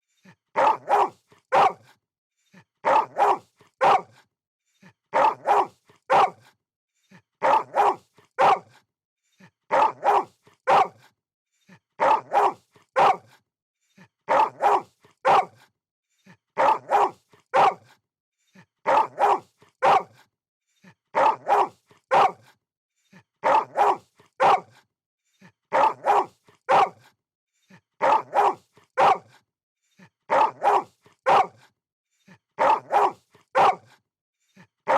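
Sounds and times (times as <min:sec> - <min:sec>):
dog barking: 0:00.6 - 0:01.9, 0:02.8 - 0:04.2, 0:05.1 - 0:06.5, 0:07.4 - 0:08.8, 0:09.7 - 0:11.1, 0:12.0 - 0:13.4, 0:14.3 - 0:15.7, 0:16.6 - 0:18.0, 0:18.8 - 0:20.3, 0:21.1 - 0:22.6, 0:23.4 - 0:24.8, 0:25.7 - 0:27.1, 0:28.0 - 0:29.4, 0:30.3 - 0:31.7, 0:32.6 - 0:34.0.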